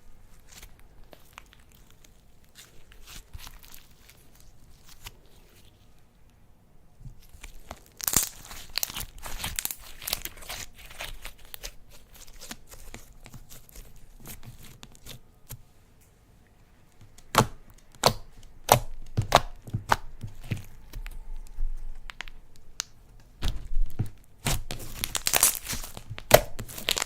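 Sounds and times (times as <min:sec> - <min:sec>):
slime popping: 0:07.2 - 0:13.6, 0:17.1 - 0:27.0
slime crackling and clicking: 0:07.2 - 0:13.7, 0:17.1 - 0:23.6, 0:24.4 - 0:27.0.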